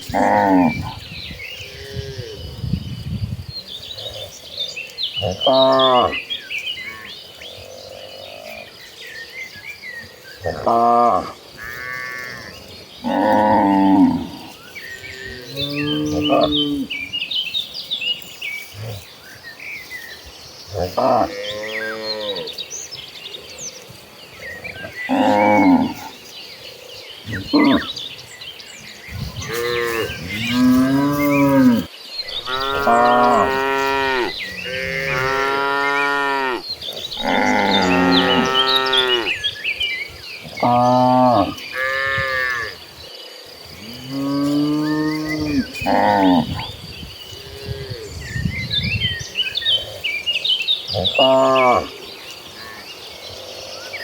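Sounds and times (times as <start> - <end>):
birds chirping: 0.0 - 54.0
cows mooing: 10.4 - 17.0, 20.8 - 22.6, 24.8 - 26.1, 29.3 - 36.6, 37.2 - 39.4, 40.5 - 42.8, 43.8 - 46.7, 50.9 - 52.0
cattle mooing: 29.4 - 36.6, 37.2 - 39.3.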